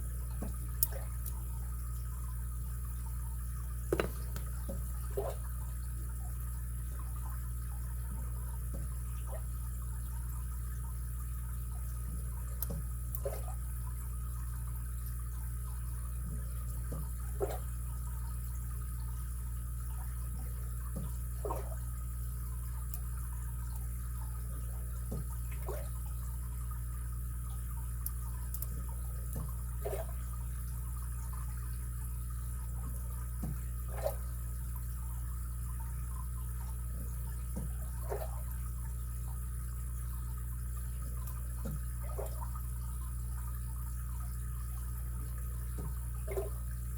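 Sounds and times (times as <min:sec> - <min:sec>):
background hum and hiss: 0:00.0 - 0:46.9.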